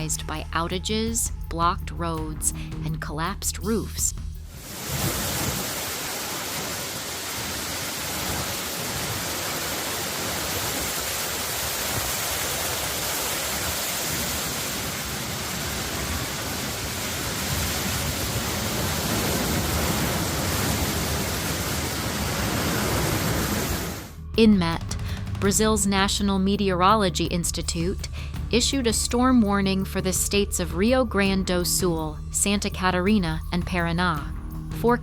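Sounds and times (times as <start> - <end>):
rushing storm noise: 4.4 - 24.2
low rumble: 21.4 - 34.8.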